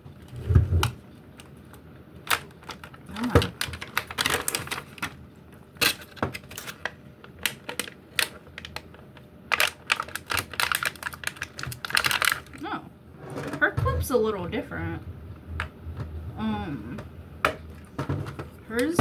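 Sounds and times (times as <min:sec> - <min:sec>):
packaging being opened by hand: 0:00.2 - 0:05.2, 0:05.8 - 0:12.6.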